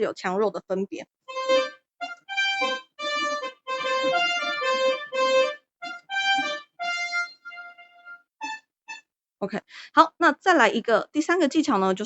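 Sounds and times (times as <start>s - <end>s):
keyboard brass notes and chords: 1.3s - 9.0s.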